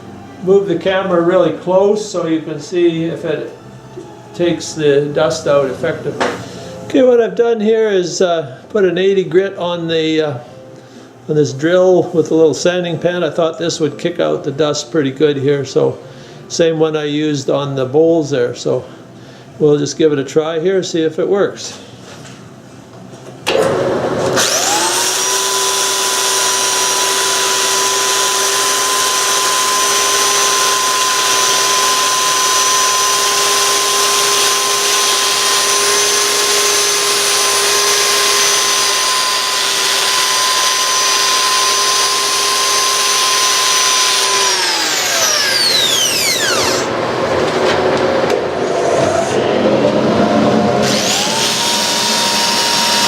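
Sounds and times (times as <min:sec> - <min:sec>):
dust collector machine noise: 0:00.0 - 0:06.9, 0:23.5 - 0:53.0
drill motor winding up and down: 0:24.2 - 0:47.0, 0:50.2 - 0:53.0.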